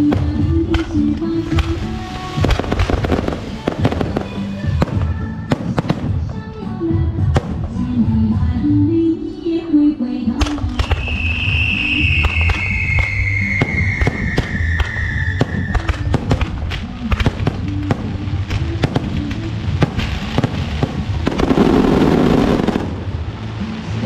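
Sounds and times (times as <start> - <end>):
firecrackers cracking: 0.0 - 6.6, 10.4 - 24.0
falling firework whistle: 10.7 - 16.4
dense burst of crackling: 15.9 - 24.0.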